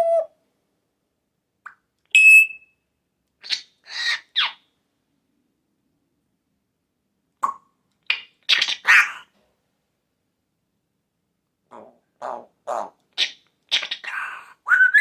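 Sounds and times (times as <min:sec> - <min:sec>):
parrot beep-like whistle: 0:02.2 - 0:02.8
parrot raspy squawks: 0:03.4 - 0:04.6, 0:07.4 - 0:09.3, 0:11.7 - 0:15.0.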